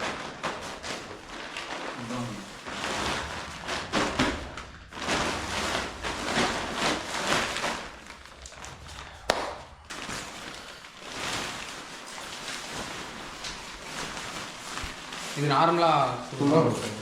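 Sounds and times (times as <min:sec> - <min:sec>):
tent fabric rustling: 0:00.0 - 0:17.0.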